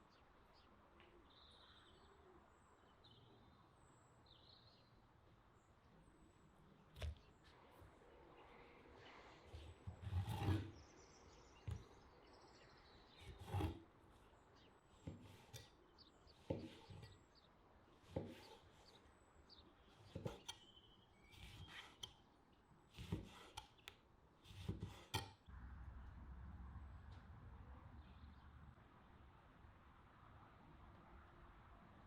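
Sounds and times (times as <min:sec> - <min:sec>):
knife cutting on wooden board: 0:09.6 - 0:10.8, 0:13.2 - 0:14.3, 0:15.0 - 0:17.2, 0:18.0 - 0:19.0, 0:19.8 - 0:22.2, 0:22.9 - 0:25.4
low steady hum: 0:25.5 - 0:32.0.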